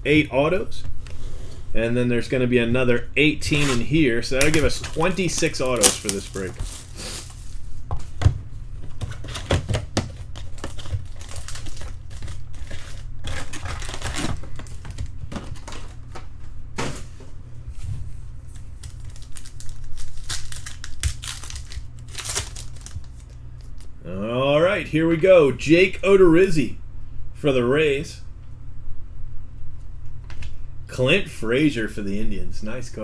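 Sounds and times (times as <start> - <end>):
wrapper crinkling and tearing: 3.5 - 7.6, 10.1 - 15.0, 18.6 - 23.9.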